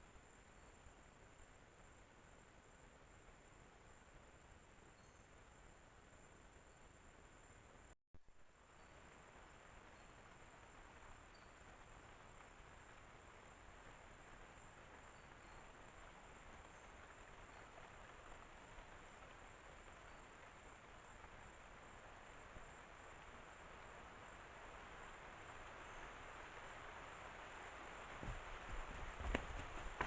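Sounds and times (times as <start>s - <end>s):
rushing hiss of wind: 9.0s - 30.0s.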